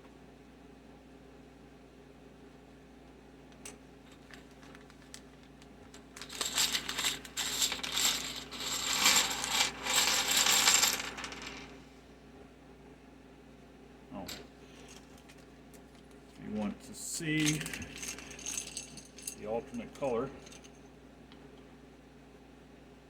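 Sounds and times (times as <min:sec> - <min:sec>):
plastic keycaps clattering: 0:04.1 - 0:08.2.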